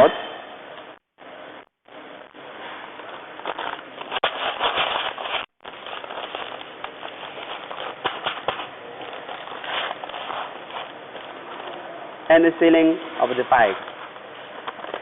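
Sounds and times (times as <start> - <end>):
plastic bags crackling: 3.0 - 11.9, 12.6 - 15.0
packing machine running: 3.0 - 15.0.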